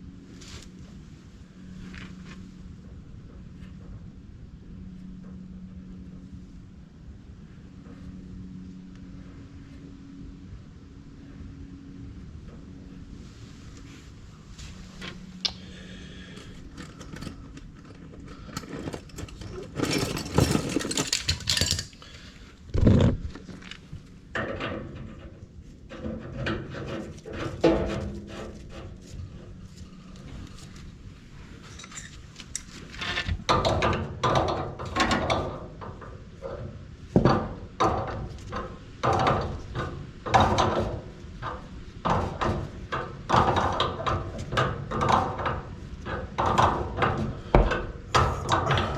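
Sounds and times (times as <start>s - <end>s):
metal fittings clinking and rattling: 18.5s - 22.1s.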